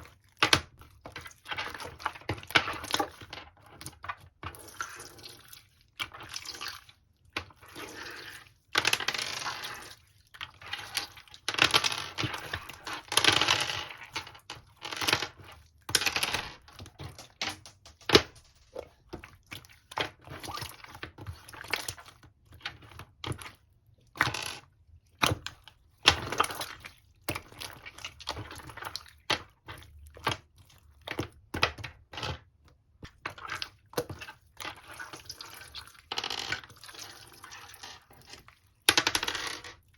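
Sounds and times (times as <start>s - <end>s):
slime squelching: 0.0s - 8.8s, 9.5s - 11.5s, 16.6s - 32.1s, 32.8s - 38.9s.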